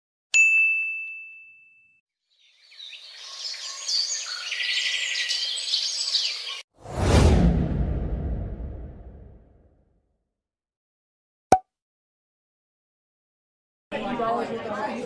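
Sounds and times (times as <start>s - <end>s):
birds chirping: 2.3s - 6.6s.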